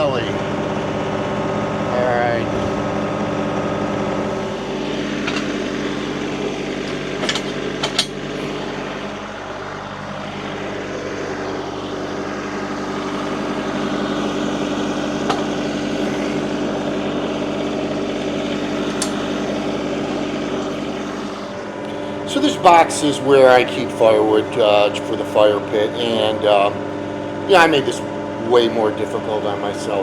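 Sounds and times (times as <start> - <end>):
tractor engine running: 0.0 - 30.0
sharp metal clanks: 5.1 - 5.9, 6.8 - 8.5.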